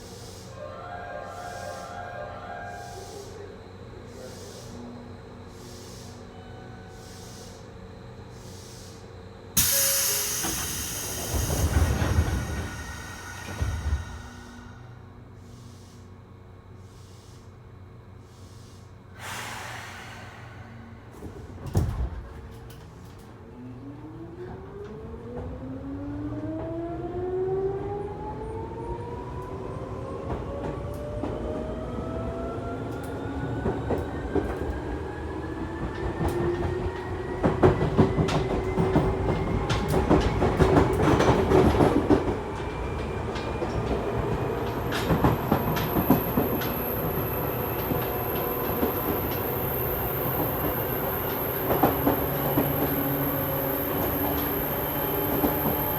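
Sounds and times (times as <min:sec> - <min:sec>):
train motor whine: 0:00.0 - 0:16.1, 0:18.3 - 0:55.9
train running rumble: 0:09.6 - 0:16.0, 0:30.2 - 0:55.9.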